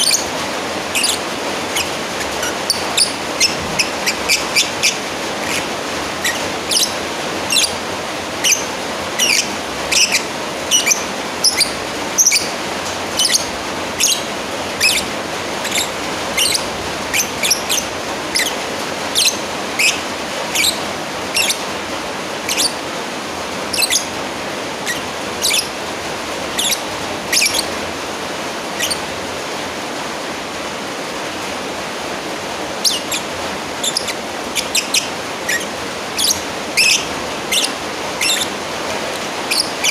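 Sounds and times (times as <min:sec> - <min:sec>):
lovebird shrill chirps: 0:00.0 - 0:07.8, 0:08.4 - 0:21.6, 0:22.4 - 0:22.8, 0:23.7 - 0:24.1, 0:24.8 - 0:25.8, 0:26.5 - 0:27.8, 0:28.8 - 0:29.0, 0:32.8 - 0:38.6, 0:39.4 - 0:39.9.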